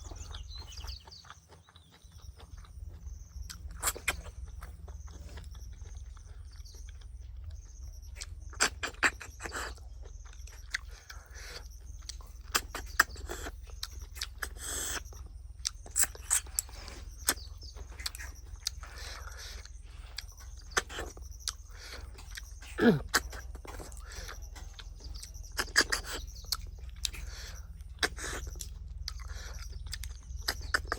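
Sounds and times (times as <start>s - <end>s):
person chewing: 0.1s - 30.9s
lip smacks: 18.0s - 30.9s.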